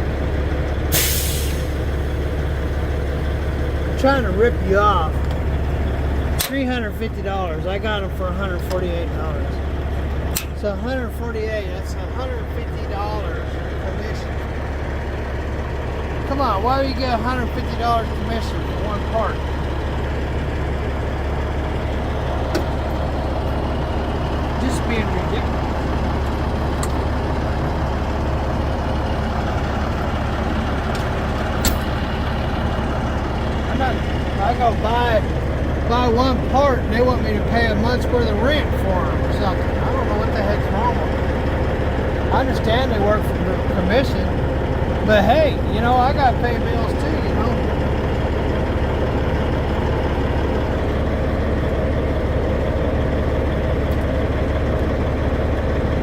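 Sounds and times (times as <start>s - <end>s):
truck engine droning: 0.0s - 56.0s.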